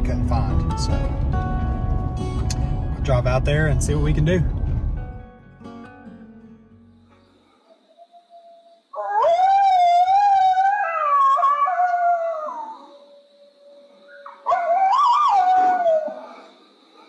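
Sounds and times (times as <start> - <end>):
coyote howling: 7.8 - 16.6.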